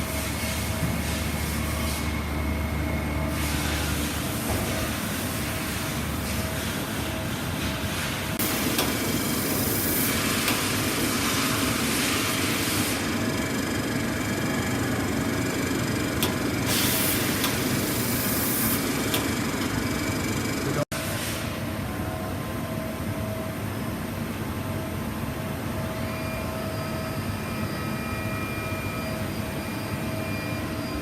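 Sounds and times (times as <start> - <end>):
machine hum: 8.4 - 20.9.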